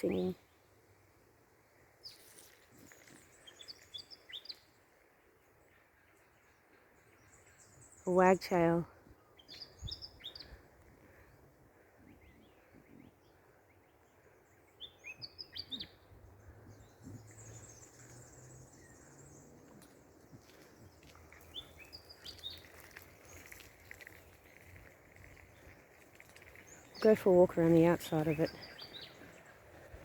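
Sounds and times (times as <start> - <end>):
bird chirping phrases: 0.0 - 0.5, 7.2 - 10.6, 26.6 - 29.7
faint outdoor background noise: 0.0 - 30.0.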